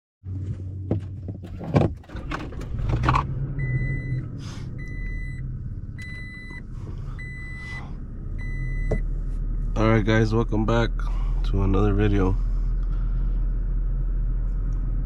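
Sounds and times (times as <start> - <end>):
low vehicle hum: 0.2 - 15.0
electronic beep: 3.6 - 5.4, 6.0 - 6.6, 7.2 - 7.8, 8.4 - 9.0.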